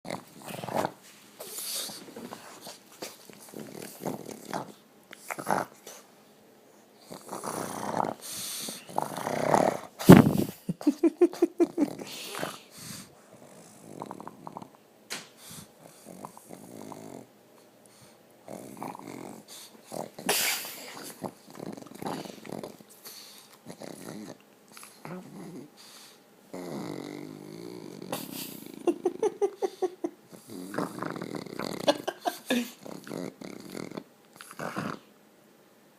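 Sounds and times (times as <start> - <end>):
dog snoring: 3.4 - 6.0, 7.0 - 10.4, 11.6 - 14.8, 15.5 - 17.3, 18.4 - 29.3, 30.3 - 35.1
dog snorting: 7.0 - 10.6, 18.5 - 29.0, 29.7 - 35.1.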